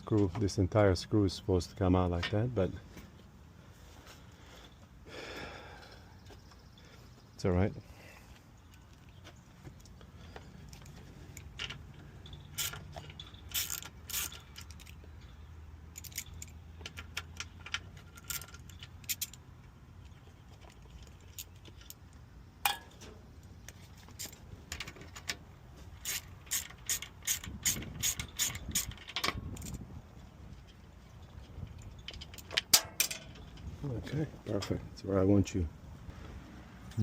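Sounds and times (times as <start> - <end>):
hand ratchet clicking: 12.3 - 15.0, 26.0 - 29.8.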